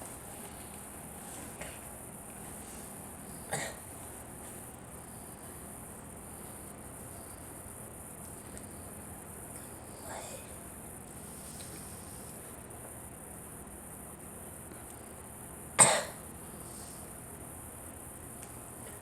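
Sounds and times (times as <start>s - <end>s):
insects chirring: 0.0s - 19.0s
girl coughing: 3.5s - 3.8s, 15.8s - 16.2s.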